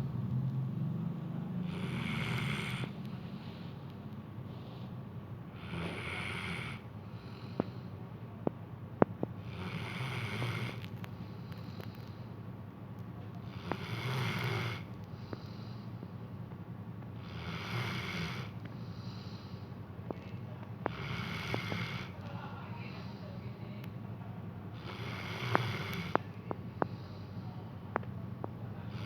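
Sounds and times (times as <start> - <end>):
dog snoring: 1.4 - 3.0, 5.5 - 7.7, 9.4 - 10.9, 13.4 - 15.8, 17.2 - 19.5, 20.8 - 22.2, 24.7 - 26.3.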